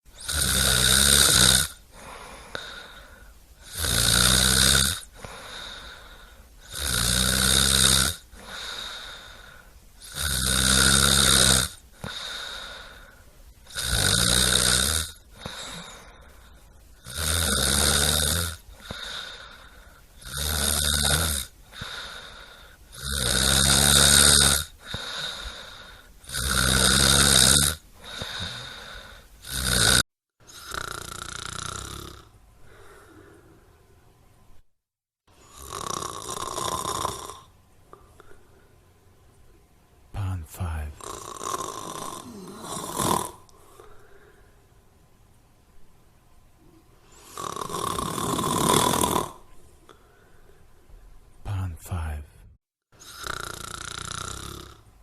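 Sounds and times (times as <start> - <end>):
loud rattling snoring: 0.2 - 1.8, 3.6 - 5.2, 6.7 - 9.2, 10.0 - 12.4, 13.7 - 16.0, 17.0 - 19.4, 20.2 - 32.3, 35.4 - 37.5, 40.9 - 43.5, 47.2 - 49.5, 53.0 - 54.9
quiet breathing: 1.8 - 3.7, 5.0 - 6.8, 8.2 - 10.1, 11.8 - 13.6, 15.2 - 17.1, 18.6 - 20.2, 21.6 - 23.0, 24.7 - 26.3, 27.9 - 29.4, 32.5 - 34.2, 37.8 - 39.6, 40.2 - 45.0, 49.3 - 53.4.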